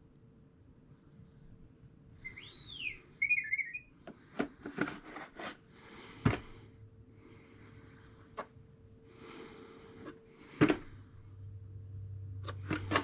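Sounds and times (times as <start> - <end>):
faint steady hum: 0.0 - 13.0
whistled chirp: 2.2 - 3.9.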